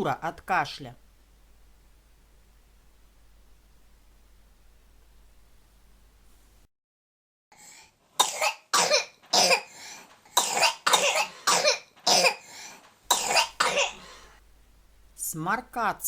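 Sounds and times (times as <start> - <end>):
person coughing hard: 8.2 - 9.7, 10.4 - 12.4, 13.1 - 14.3.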